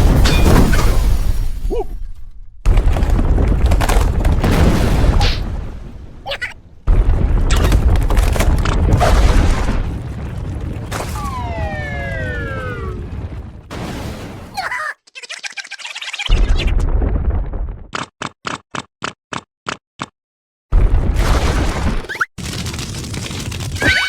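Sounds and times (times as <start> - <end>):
low booming rumbles: 0.0 - 13.8, 16.4 - 17.9
tone gliding downward: 11.2 - 13.1.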